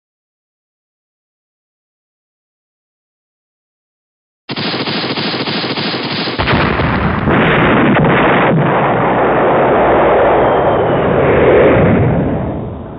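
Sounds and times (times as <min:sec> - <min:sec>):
sharp gunshot cracks: 0:04.5 - 0:09.4
gunfire rumbling: 0:04.5 - 0:11.0.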